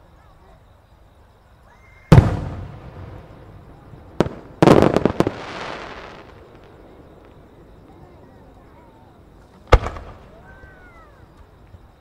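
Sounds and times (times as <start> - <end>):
firework shells bursting: 2.1 - 7.4
firework crackling hiss: 2.1 - 7.8.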